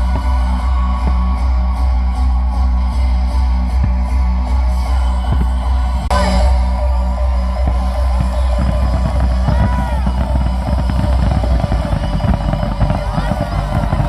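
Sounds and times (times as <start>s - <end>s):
loud music with heavy bass: 0.0s - 14.0s
fireworks crackling and popping: 7.5s - 14.0s.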